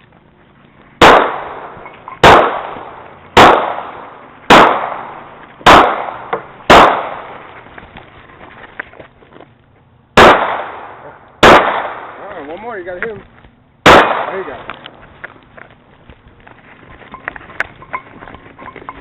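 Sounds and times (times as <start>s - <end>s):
handgun shots with echo: 1.0s - 7.3s, 10.2s - 12.2s, 13.8s - 14.7s.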